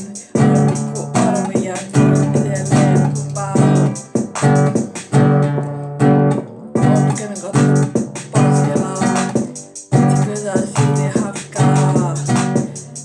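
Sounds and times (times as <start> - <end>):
guitar music: 0.0 - 13.0.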